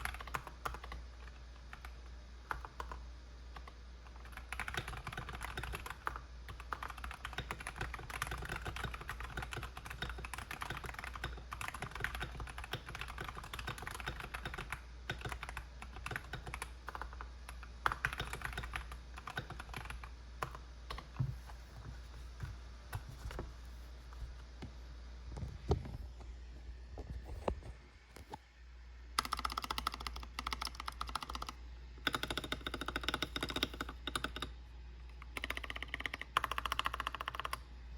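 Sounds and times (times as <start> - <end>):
typing on mechanical keyboard: 0.0 - 3.0, 3.6 - 21.0, 29.2 - 34.5, 35.1 - 37.6.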